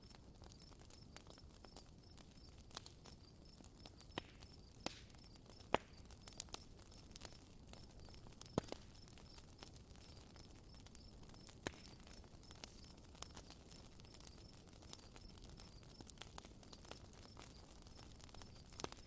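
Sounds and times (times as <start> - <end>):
campfire crackling and popping: 0.0 - 19.0.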